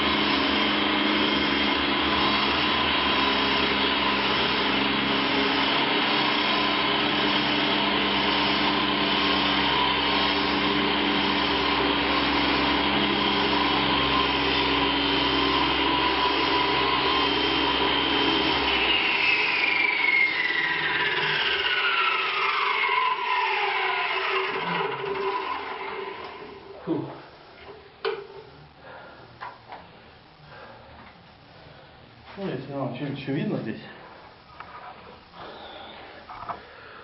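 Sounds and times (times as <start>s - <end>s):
wall chaser saw cutting: 0.0s - 26.8s
dust extraction vacuum: 0.0s - 28.3s, 32.3s - 37.0s.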